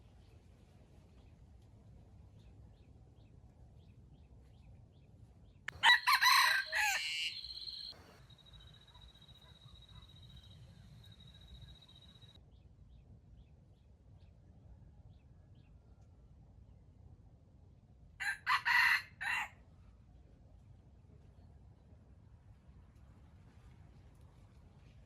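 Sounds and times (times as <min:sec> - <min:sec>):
rooster crowing: 0:05.8 - 0:08.1, 0:18.2 - 0:19.5.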